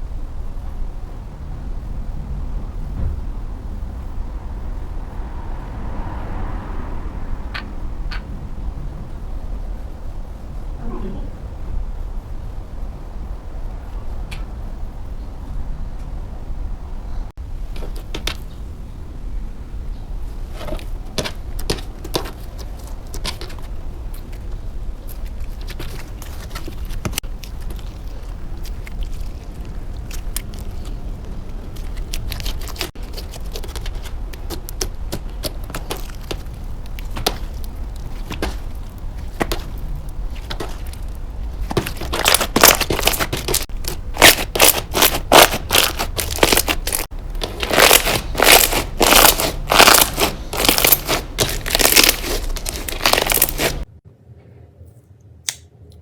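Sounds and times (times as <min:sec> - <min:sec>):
slime clicking and crackling: 0:21.1 - 0:53.9.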